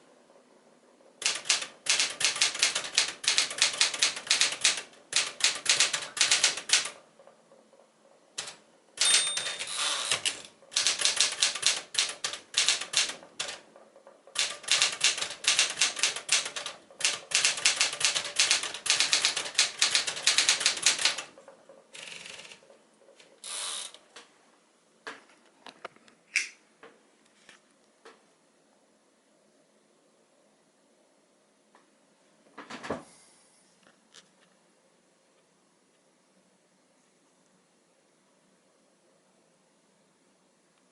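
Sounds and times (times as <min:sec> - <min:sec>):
typewriter key strikes: 0:01.2 - 0:07.0, 0:08.4 - 0:13.6, 0:14.3 - 0:21.3
typewriter bell ringing: 0:08.4 - 0:11.4.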